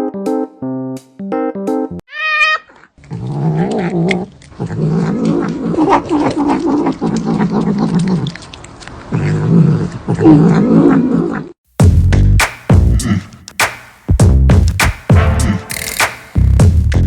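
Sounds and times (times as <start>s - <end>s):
cat yowling: 2.1s - 2.9s.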